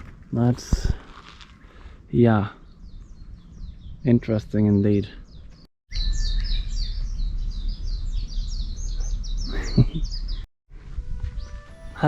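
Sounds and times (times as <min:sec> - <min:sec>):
small bird chirping: 0:02.6 - 0:10.5.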